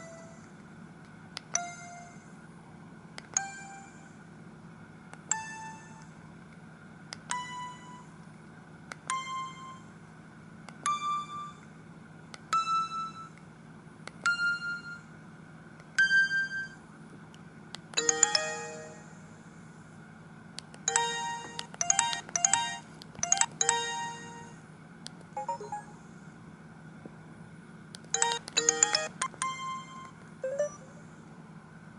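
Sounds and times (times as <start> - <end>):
mobile phone ringtone: 18.0 - 19.0, 20.9 - 24.6, 25.4 - 26.0, 28.2 - 31.0.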